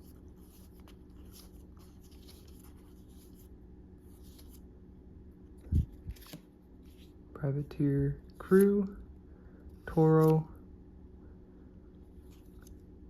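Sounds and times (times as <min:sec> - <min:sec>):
trading cards rustling: 0:00.0 - 0:04.7, 0:05.6 - 0:07.2, 0:08.3 - 0:09.0, 0:09.7 - 0:10.5
steady low hum: 0:00.0 - 0:13.0.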